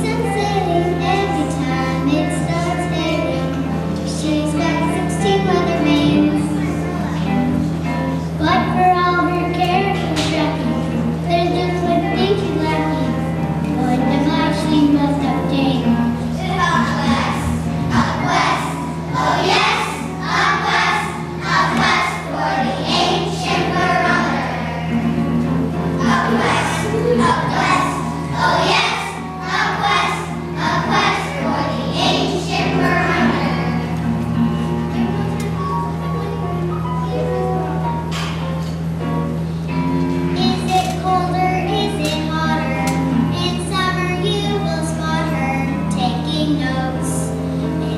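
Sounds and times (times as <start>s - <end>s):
musical accompaniment: 0.0s - 47.9s
children singing: 16.4s - 25.0s, 26.0s - 33.9s.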